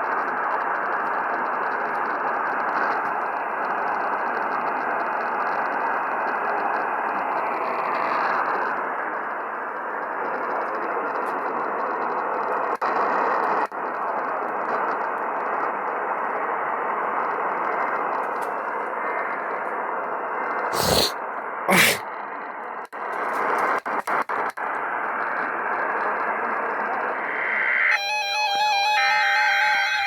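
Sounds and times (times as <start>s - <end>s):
radio static hiss: 0.0s - 30.0s
loud crackles: 22.4s - 30.0s.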